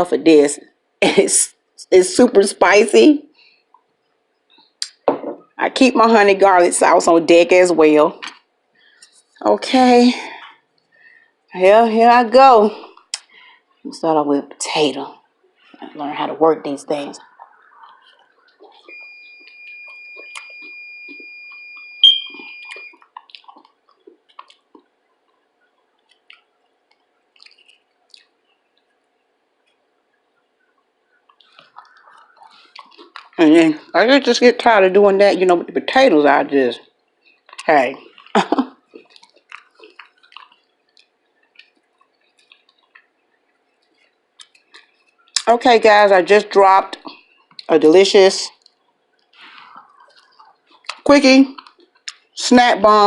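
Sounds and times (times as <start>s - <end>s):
steady high-pitched tone: 15.9s - 23.0s
chewing: 17.2s - 33.9s, 36.8s - 45.5s, 47.0s - 47.7s, 48.5s - 52.4s.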